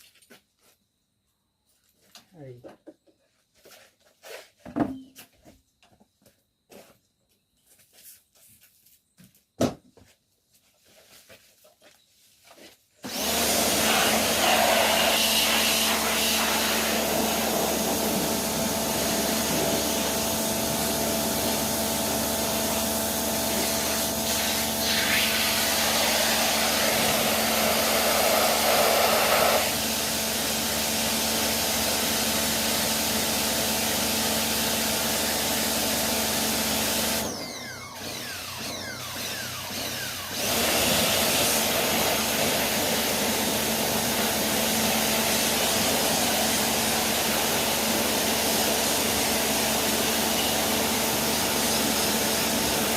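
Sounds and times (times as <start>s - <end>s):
pressure cleaner motor humming: 13.0s - 52.9s
water jet hissing: 23.5s - 29.7s.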